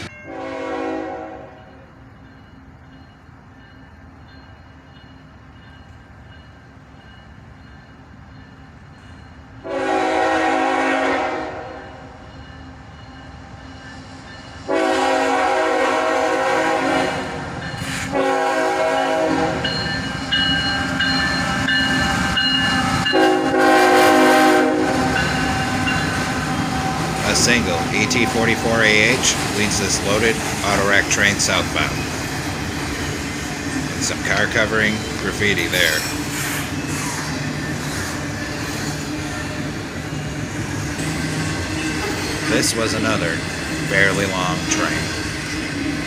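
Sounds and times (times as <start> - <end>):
locomotive air horn blasts: 0.0 - 1.6, 9.6 - 12.1, 14.7 - 17.4, 18.0 - 19.7, 23.0 - 25.2
rumble of approaching train: 0.0 - 46.0.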